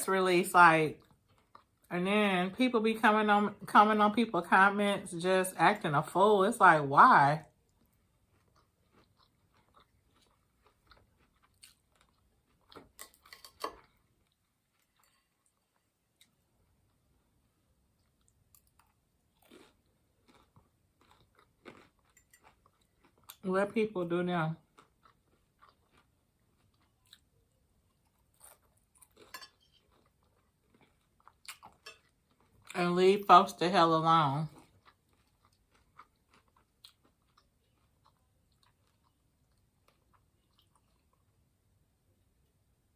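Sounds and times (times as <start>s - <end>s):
person chewing food: 1.0s - 1.9s, 7.5s - 23.4s, 24.6s - 32.7s, 34.5s - 42.6s.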